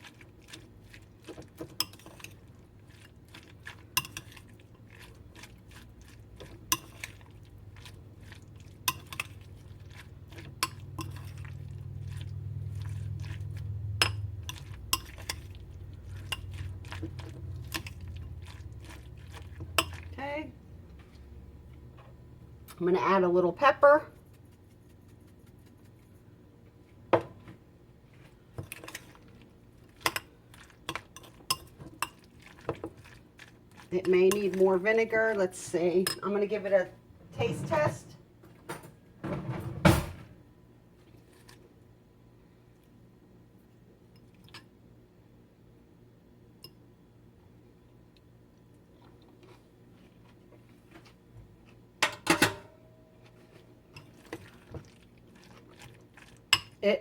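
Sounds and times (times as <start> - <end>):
metal spoon clinking on bowl: 8.8 - 9.4.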